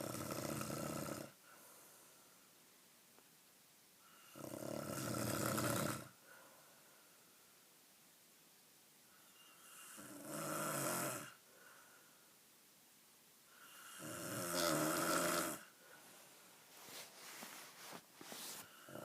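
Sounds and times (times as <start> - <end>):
person snoring: 0.0 - 1.4, 4.2 - 6.2, 9.6 - 11.4, 13.6 - 15.7, 18.6 - 19.0.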